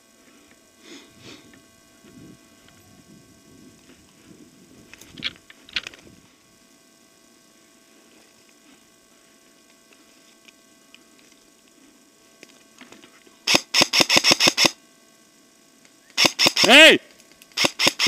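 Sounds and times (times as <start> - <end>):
airsoft gun shots: 13.5 - 14.8, 16.2 - 17.0, 17.6 - 18.0
small clicks: 15.8 - 18.0.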